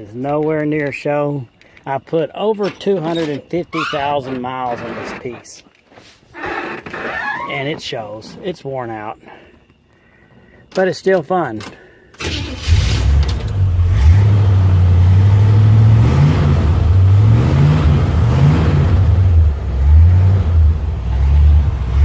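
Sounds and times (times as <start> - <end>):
car engine revving: 12.4 - 22.0.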